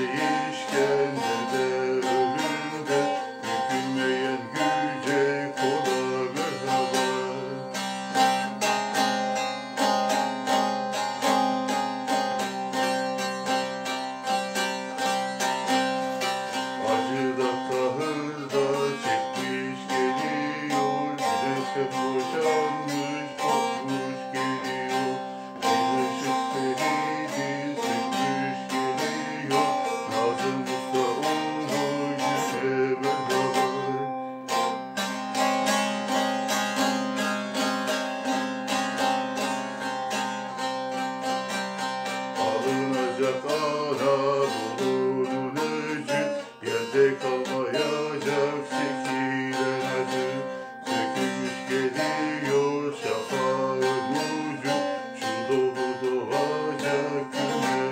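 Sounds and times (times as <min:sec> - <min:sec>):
plucked string folk music: 0:00.0 - 0:57.9.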